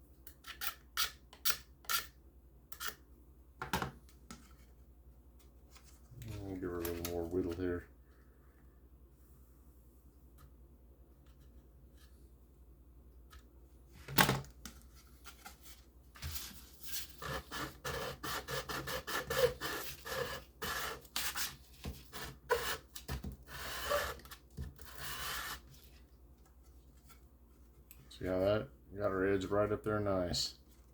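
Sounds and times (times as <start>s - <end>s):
knife scraping plastic sheet: 16.2s - 25.9s.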